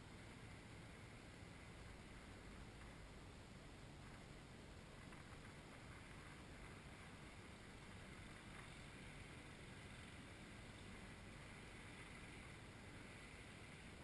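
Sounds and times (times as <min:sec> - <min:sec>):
faint background hiss: 0:00.0 - 0:14.0.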